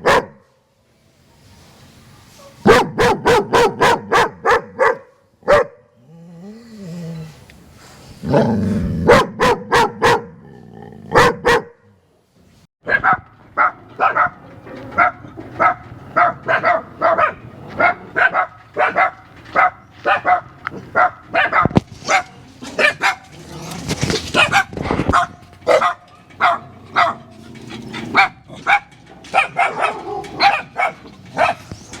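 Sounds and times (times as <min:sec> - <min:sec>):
dog barking: 0:00.0 - 0:00.4, 0:02.4 - 0:05.8, 0:09.0 - 0:10.4, 0:11.1 - 0:11.8, 0:12.8 - 0:14.4, 0:15.0 - 0:23.3, 0:24.3 - 0:27.2, 0:28.2 - 0:31.7.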